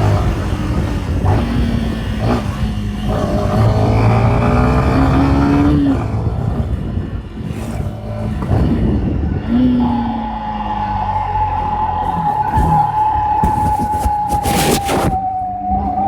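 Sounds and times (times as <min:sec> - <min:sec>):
motorcycle engine running: 0:00.0 - 0:15.2
moaning whistle: 0:07.8 - 0:16.0.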